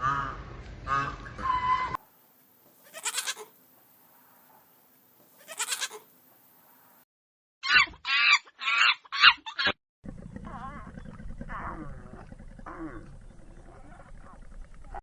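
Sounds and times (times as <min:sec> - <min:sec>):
sheep bleating: 0:02.8 - 0:03.5, 0:05.4 - 0:06.0.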